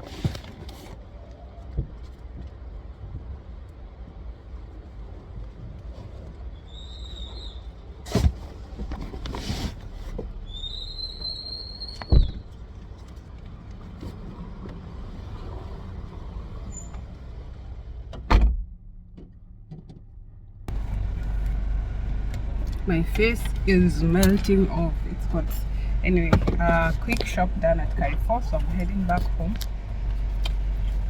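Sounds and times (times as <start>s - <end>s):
road vehicles rumbling: 0.0s - 31.0s
high squeal: 10.4s - 12.4s.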